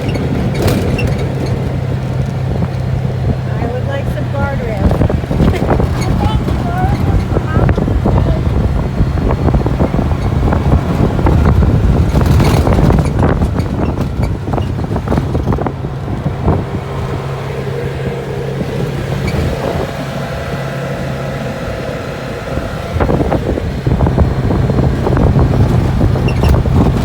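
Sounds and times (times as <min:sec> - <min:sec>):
quad bike engine running: 0:00.0 - 0:27.0
wind rumbling on microphone: 0:00.0 - 0:27.0.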